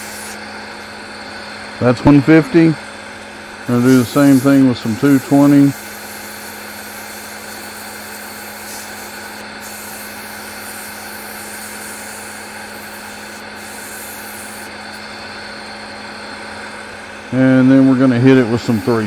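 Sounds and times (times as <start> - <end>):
sandpaper hissing on spinning wood: 0.0 - 1.0, 3.6 - 15.2, 17.3 - 19.0
wood lathe humming: 0.0 - 19.0.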